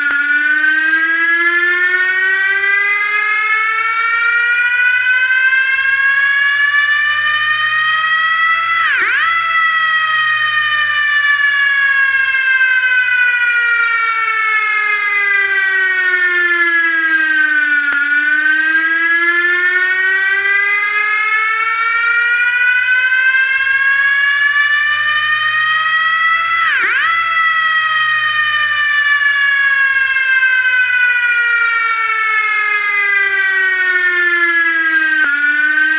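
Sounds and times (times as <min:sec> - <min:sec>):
fire truck siren wailing: 0:00.0 - 0:35.9.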